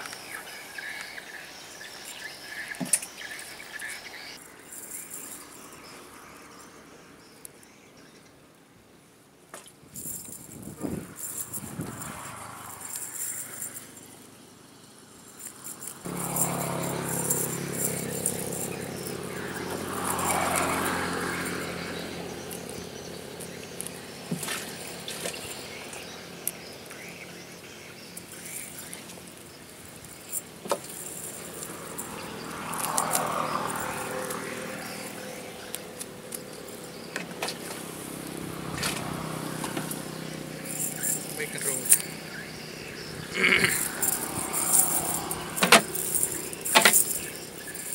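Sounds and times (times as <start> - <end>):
insects chirping: 0.0 - 8.5, 9.6 - 47.9
steady engine hum: 10.0 - 47.9.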